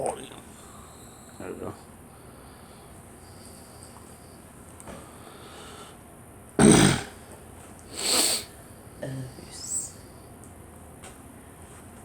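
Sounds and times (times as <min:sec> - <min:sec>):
girl coughing: 0:06.6 - 0:07.1.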